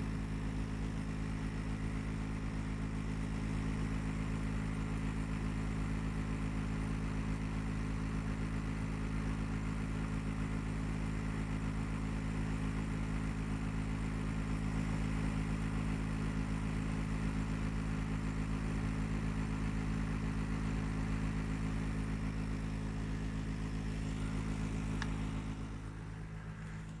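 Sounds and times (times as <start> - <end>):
air conditioner humming: 24.0 - 27.0.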